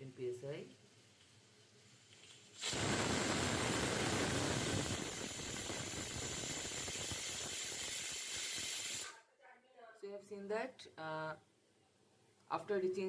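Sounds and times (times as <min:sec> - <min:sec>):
pressure cooker whistle venting steam: 0:02.3 - 0:09.2.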